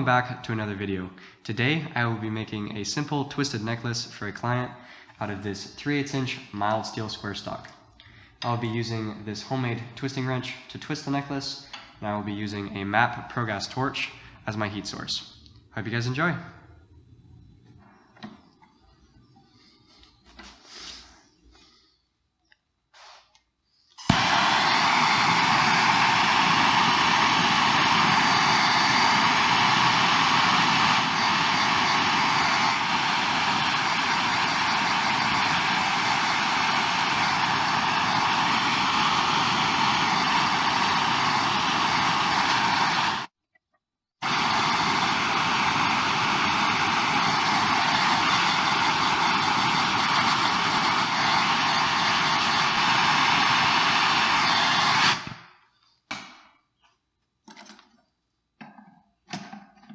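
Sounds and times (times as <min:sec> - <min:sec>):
gas torch hissing: 0:24.0 - 0:43.3, 0:44.2 - 0:55.2.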